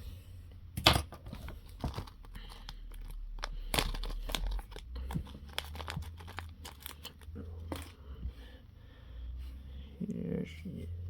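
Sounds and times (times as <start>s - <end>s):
packaging crinkling and tearing: 1.3s - 7.4s.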